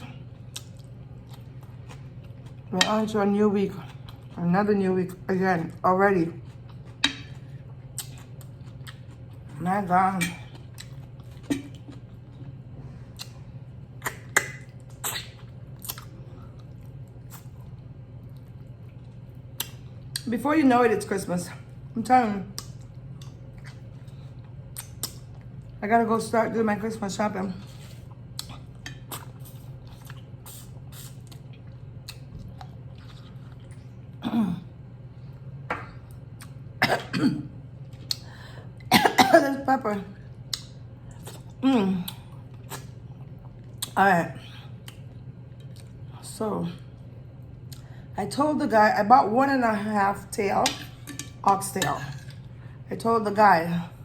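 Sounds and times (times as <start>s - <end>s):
person chewing food: 0.0s - 2.7s, 6.4s - 9.6s, 10.3s - 20.2s, 27.8s - 34.2s, 40.4s - 46.0s
low steady hum: 0.0s - 54.0s
person clearing throat: 34.2s - 34.7s, 36.8s - 37.5s, 38.9s - 39.6s.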